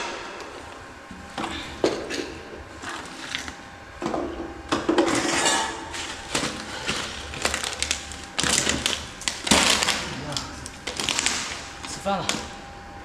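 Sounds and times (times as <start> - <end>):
pot and utensils clinking scraping: 5.1 - 6.2.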